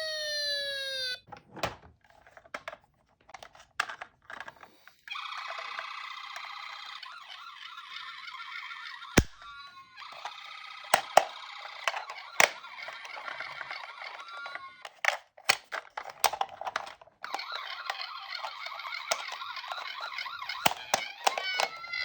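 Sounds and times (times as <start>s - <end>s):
toy sirens warbling and wailing: 0.0s - 1.2s, 5.1s - 14.9s, 17.2s - 22.0s.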